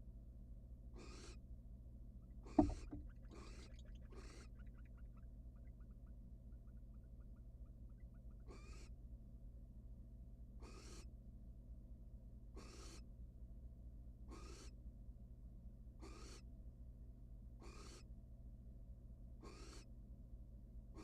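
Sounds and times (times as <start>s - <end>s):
owl hissing calls: 1.0s - 1.3s, 8.5s - 8.9s, 10.6s - 11.0s, 12.6s - 13.0s, 14.3s - 14.7s, 16.0s - 16.4s, 17.6s - 18.0s, 19.4s - 19.9s.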